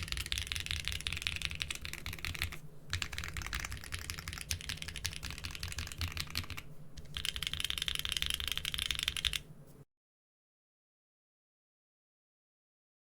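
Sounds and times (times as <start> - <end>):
mechanical keyboard typing: 0.0 - 9.4.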